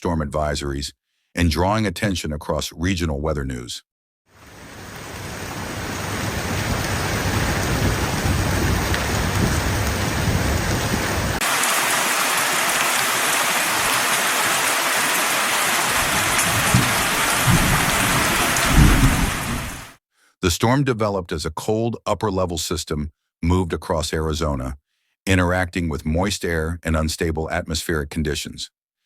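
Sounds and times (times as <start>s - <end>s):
heavy rain pouring: 4.3s - 20.0s.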